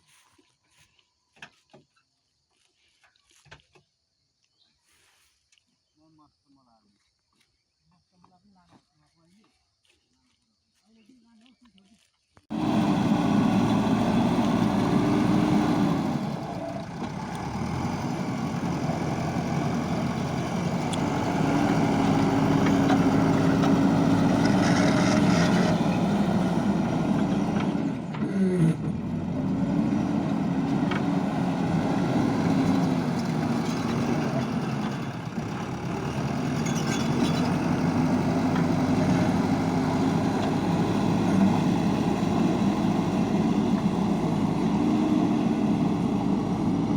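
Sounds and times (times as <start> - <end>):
diesel engine revving: 12.5 - 46.9.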